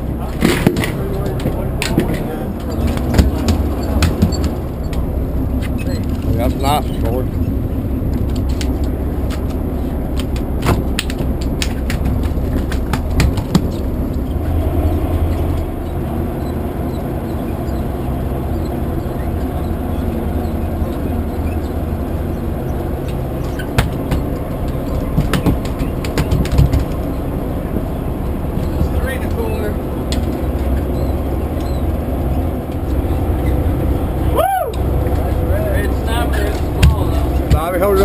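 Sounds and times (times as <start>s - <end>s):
boat engine humming: 0.0s - 38.0s
knocks and clicks: 0.4s - 6.4s, 8.1s - 14.5s, 23.1s - 27.2s.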